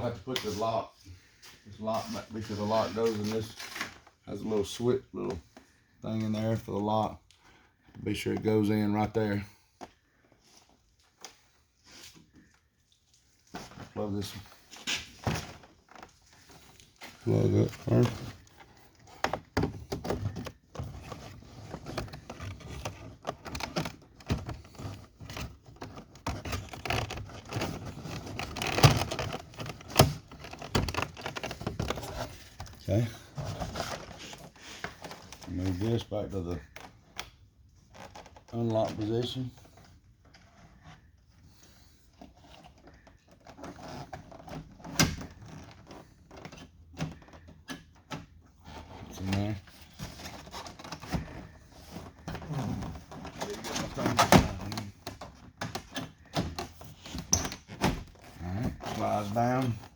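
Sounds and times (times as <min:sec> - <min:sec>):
plastic parts clicking and scraping: 0:14.8 - 0:41.4, 0:42.2 - 0:59.9.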